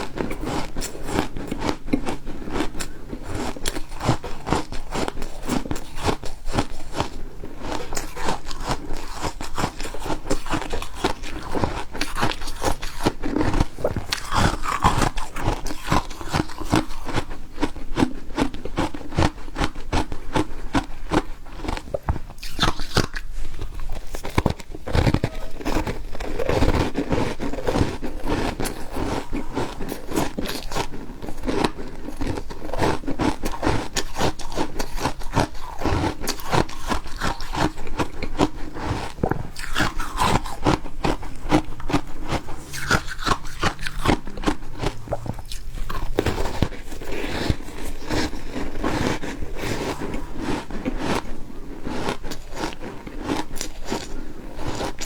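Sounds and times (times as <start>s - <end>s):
person crunching ice: 21.1s - 55.0s.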